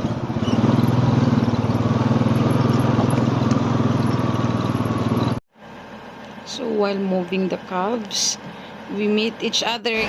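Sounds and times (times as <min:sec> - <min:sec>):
farm vehicle engine running: 0:00.0 - 0:05.4.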